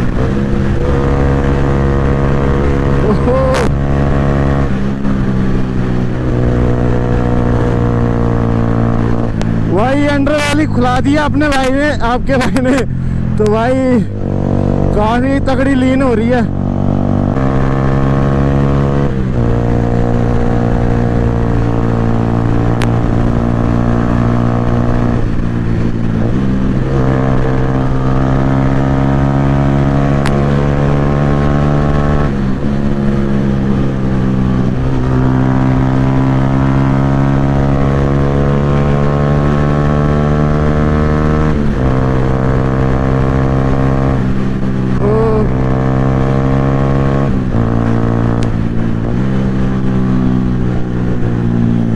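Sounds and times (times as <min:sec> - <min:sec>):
wind noise on microphone: 0:00.0 - 0:10.2
motorcycle engine with loud exhaust: 0:00.0 - 0:51.9.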